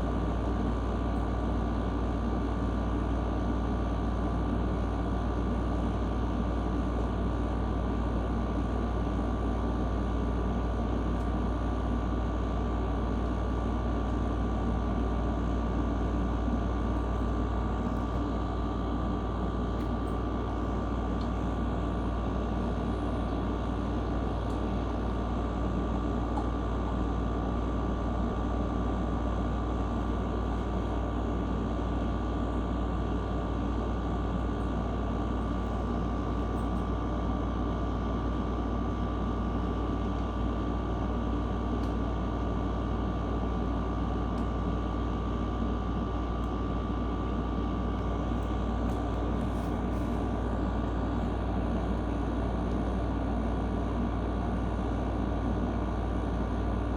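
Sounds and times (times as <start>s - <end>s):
faint high hum: 14.2s - 56.9s.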